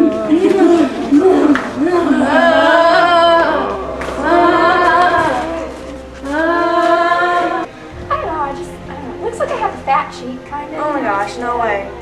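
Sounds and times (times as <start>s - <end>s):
voices singing long notes: 0.0s - 9.2s.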